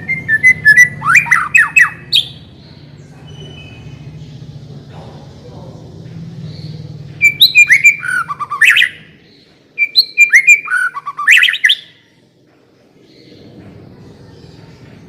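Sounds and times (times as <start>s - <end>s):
bird singing whistled phrases: 0.0s - 2.4s, 7.2s - 9.1s, 9.8s - 12.0s.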